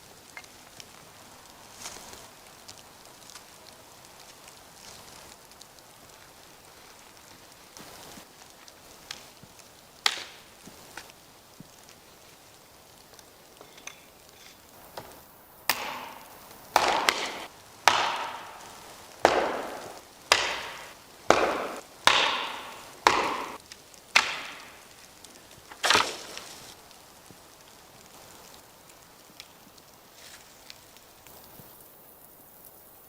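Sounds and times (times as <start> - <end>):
axe chopping wood: 10.0 - 10.4, 15.7 - 24.8, 25.7 - 26.7.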